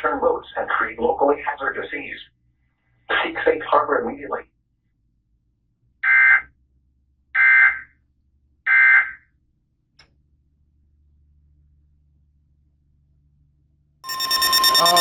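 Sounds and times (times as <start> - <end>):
buzzy data bursts: 14.1 - 15.0.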